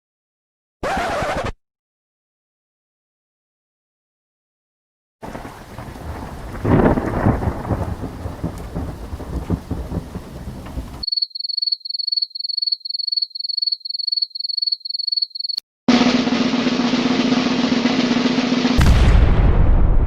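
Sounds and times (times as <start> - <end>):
steady rain: 5.2 - 11.0
thunder roll: 5.2 - 11.0, 15.9 - 20.0.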